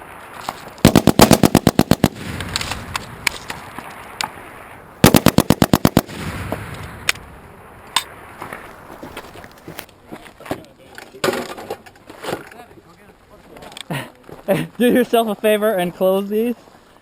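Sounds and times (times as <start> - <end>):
faint sharp cracks: 0.4 - 9.9
machine gun firing bursts: 0.8 - 3.4, 5.0 - 6.4.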